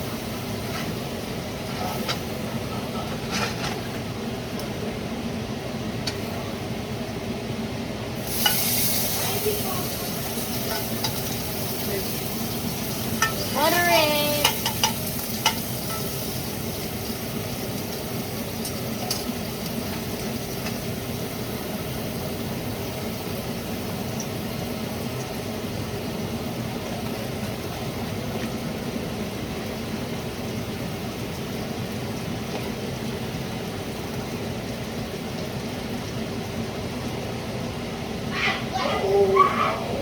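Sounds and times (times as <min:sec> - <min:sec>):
pancakes sizzling in a pan: 0:08.2 - 0:36.0.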